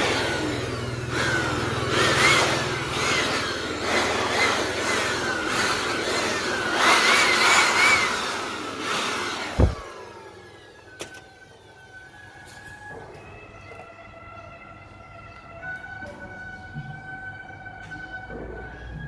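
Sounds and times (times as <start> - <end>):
electric power tool whining: 0.0 - 13.0.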